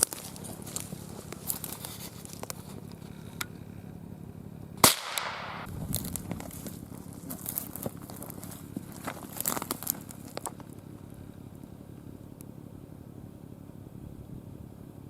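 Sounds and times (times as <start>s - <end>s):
crackles of brush or footsteps: 0.0s - 3.8s, 4.8s - 12.1s
gunshot with echo: 4.8s - 5.7s.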